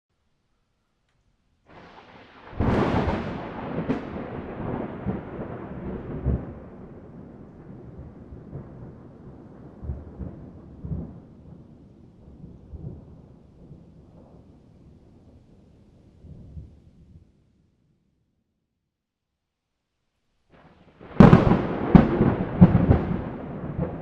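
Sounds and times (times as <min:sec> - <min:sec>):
thunderclap: 0:01.7 - 0:17.3, 0:20.6 - 0:24.0
rolling thunder rumble: 0:01.7 - 0:17.4, 0:20.6 - 0:24.0.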